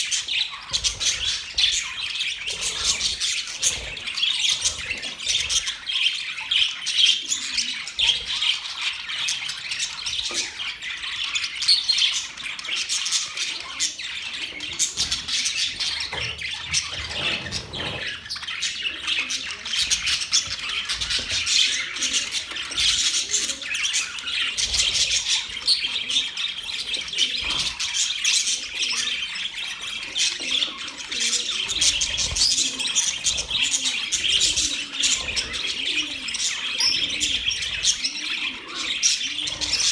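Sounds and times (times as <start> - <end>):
bird squawks: 0.0 - 39.9
small birds chirping: 0.0 - 39.9.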